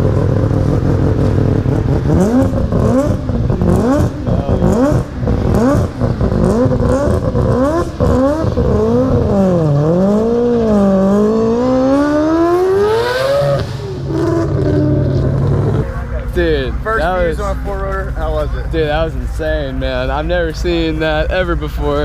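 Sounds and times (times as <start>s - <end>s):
rotary engine revving: 0.0s - 16.2s.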